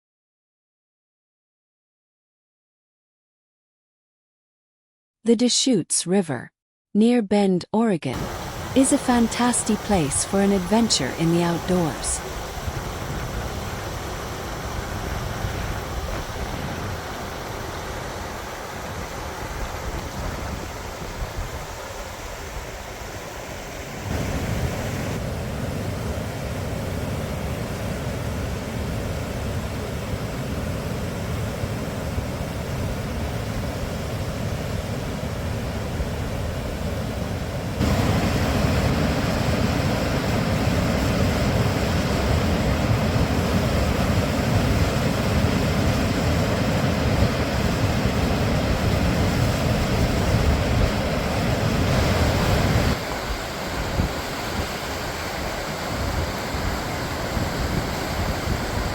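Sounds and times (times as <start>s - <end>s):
river water rushing: 8.2s - 58.9s.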